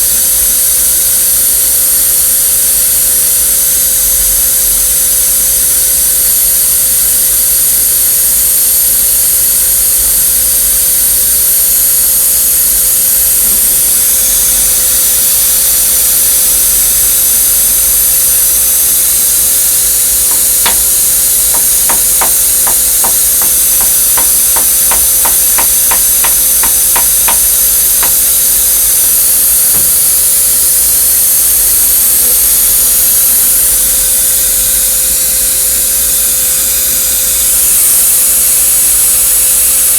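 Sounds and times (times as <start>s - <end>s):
steady loud hiss with hum: 0.0s - 39.9s
hammer tapping metal vise: 19.9s - 30.2s.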